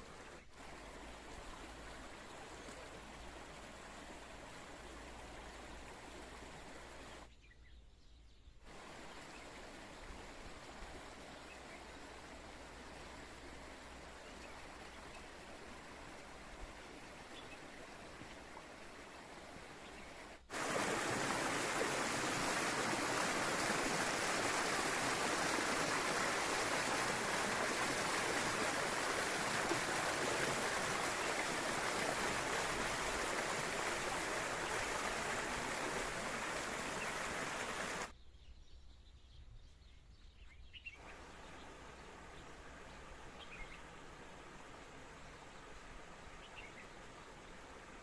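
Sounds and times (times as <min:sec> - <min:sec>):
spring water rushing: 0:00.0 - 0:07.3, 0:08.7 - 0:38.1, 0:41.0 - 0:48.0.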